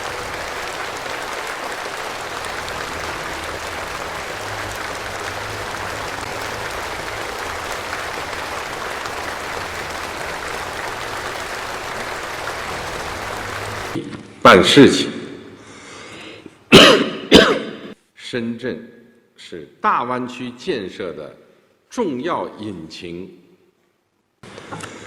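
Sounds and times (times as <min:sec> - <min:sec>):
audience applauding: 0:00.0 - 0:14.0.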